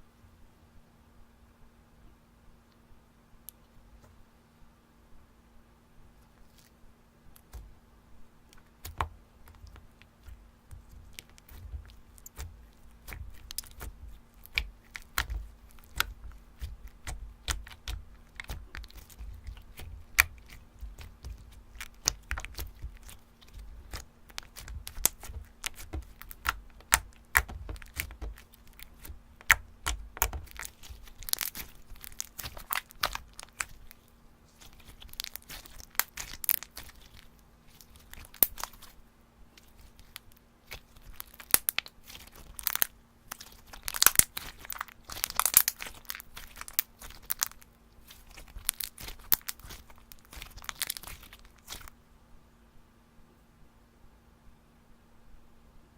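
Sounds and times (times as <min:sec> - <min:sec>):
faint steady hum: 0:00.0 - 0:55.9
slime squishing and popping: 0:08.5 - 0:39.0, 0:39.6 - 0:51.9.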